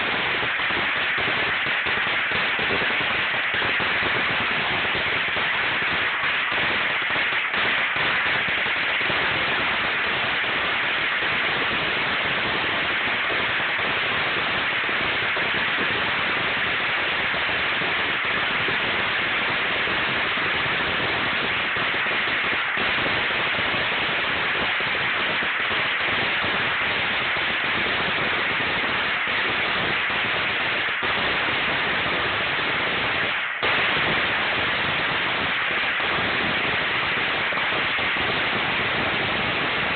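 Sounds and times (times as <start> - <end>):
firecrackers crackling: 0.0 - 39.9.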